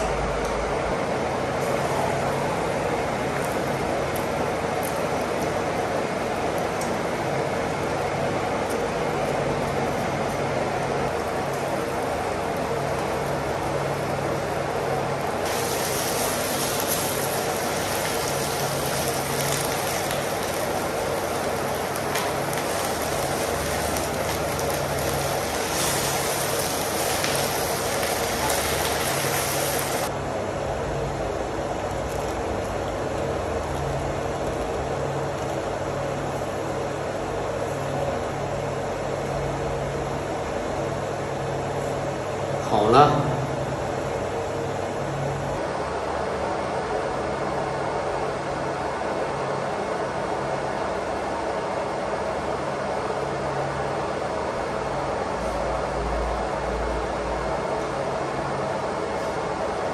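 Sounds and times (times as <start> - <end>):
water pump drone: 0.0 - 59.9
bright hiss: 22.2 - 30.1.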